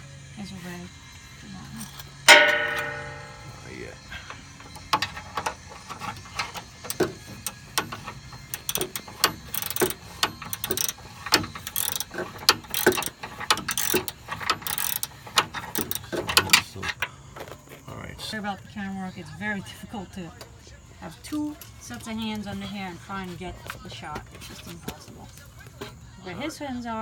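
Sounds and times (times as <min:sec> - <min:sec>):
ratchet wrench clicking: 0:01.8 - 0:03.6, 0:04.4 - 0:16.7
metal scraping: 0:01.8 - 0:17.0.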